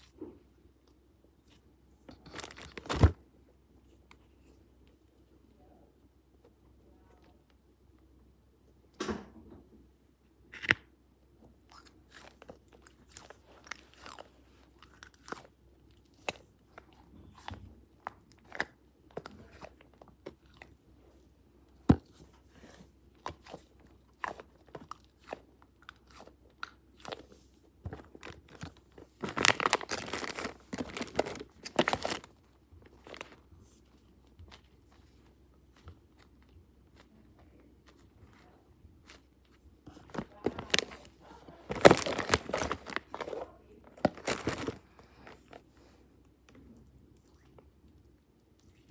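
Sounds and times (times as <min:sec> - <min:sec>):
sharp crunches and clicks: 0:23.3 - 0:33.5, 0:39.9 - 0:45.6.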